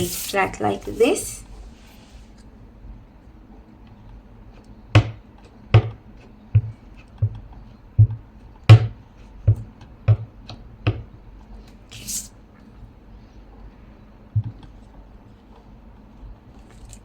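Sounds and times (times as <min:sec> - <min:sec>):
paper rustling: 0:00.0 - 0:02.2.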